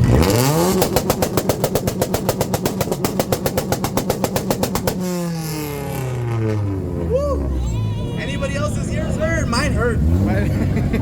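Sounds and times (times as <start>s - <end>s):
car engine launch limiter pops: 0.0s - 7.6s
car engine revs falling: 0.0s - 11.0s.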